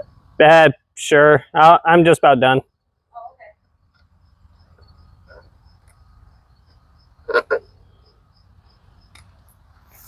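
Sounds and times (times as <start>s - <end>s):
faint cricket chirping: 2.2s - 10.0s.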